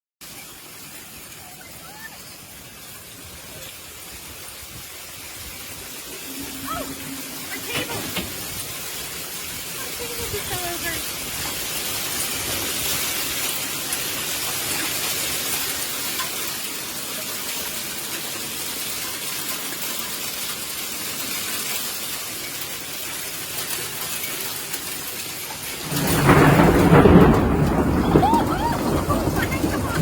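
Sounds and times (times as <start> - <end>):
hail and rain pelting down: 0.2 - 30.0
deep rumbling: 5.8 - 9.0.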